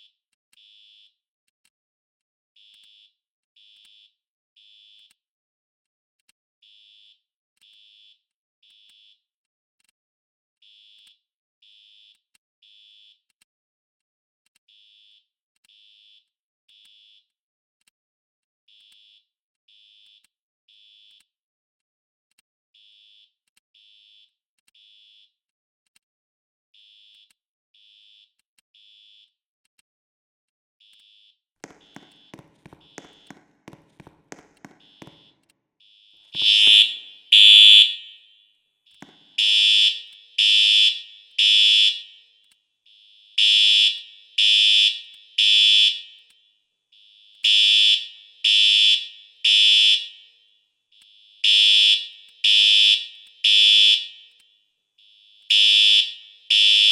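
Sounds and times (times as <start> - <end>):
fire alarm beeping: 30.9 - 56.9.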